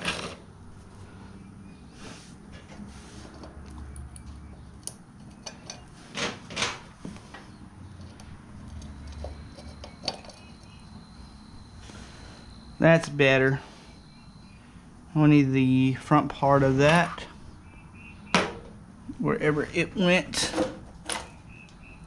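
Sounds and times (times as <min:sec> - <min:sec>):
louder knocks: 0:18.3 - 0:18.7.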